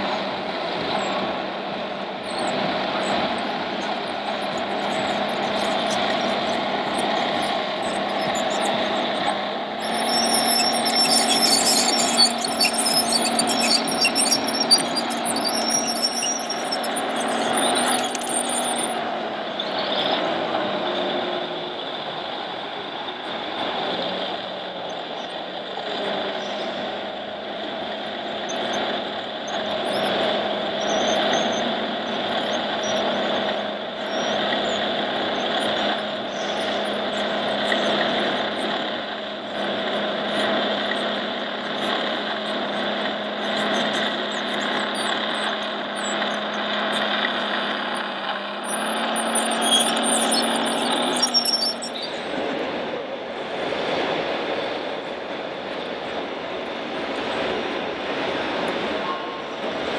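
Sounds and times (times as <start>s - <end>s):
high wavering squeals: 0.0s - 21.1s, 28.3s - 52.5s
small motors and gears whining: 0.0s - 22.2s, 23.2s - 52.7s.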